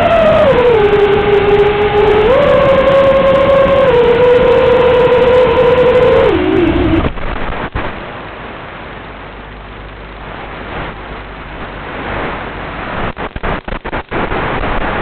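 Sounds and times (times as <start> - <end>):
wind buffeting microphone: 0.0 - 8.0.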